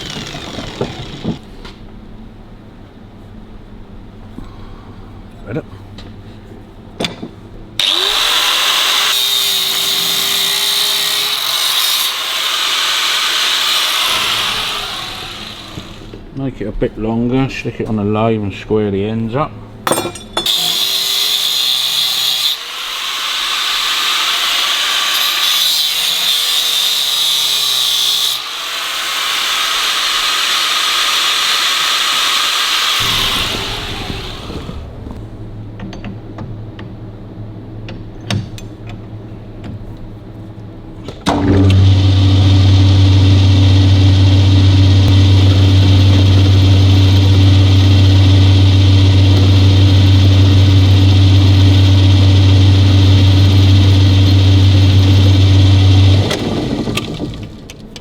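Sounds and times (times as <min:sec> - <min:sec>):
high-pitched power tool on metal: 0:00.0 - 0:01.4, 0:07.8 - 0:16.2, 0:20.4 - 0:34.9, 0:41.7 - 0:57.1
lathe motor humming: 0:00.0 - 0:01.4, 0:07.8 - 0:16.2, 0:22.4 - 0:35.1, 0:41.6 - 0:57.6.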